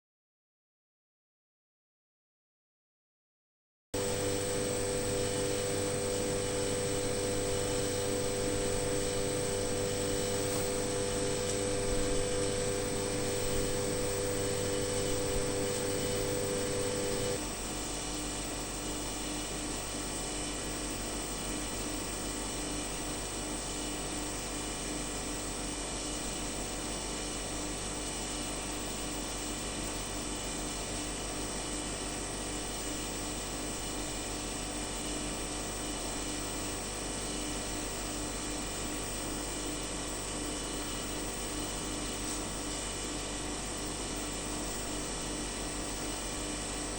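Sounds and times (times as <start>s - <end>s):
mid-pitched whine: 4.0s - 19.9s
steady machine hum: 4.0s - 30.8s.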